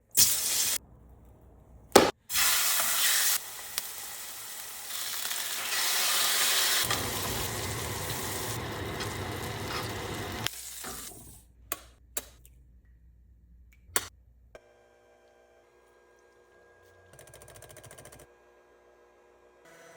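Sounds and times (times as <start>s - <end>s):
food sizzling in a pan: 2.3s - 11.3s.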